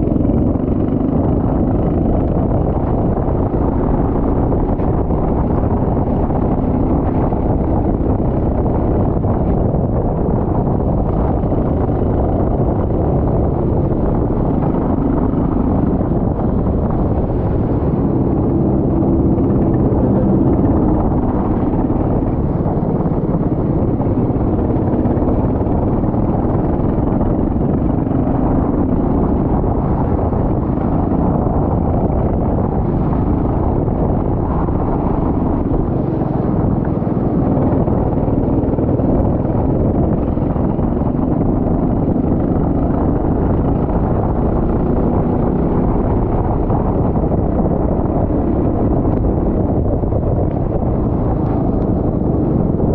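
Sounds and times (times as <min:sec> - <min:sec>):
go-kart engine drone: 0:00.0 - 0:52.9.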